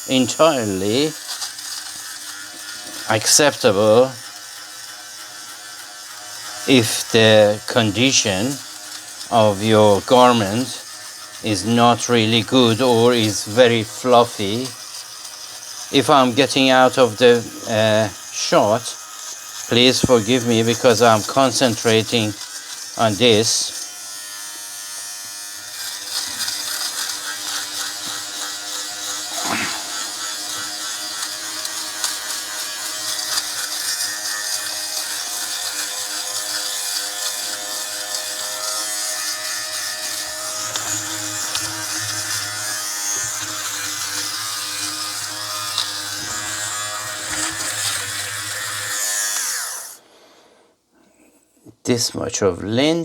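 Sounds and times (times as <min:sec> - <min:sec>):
fabric shaver buzzing: 0:00.0 - 0:50.6.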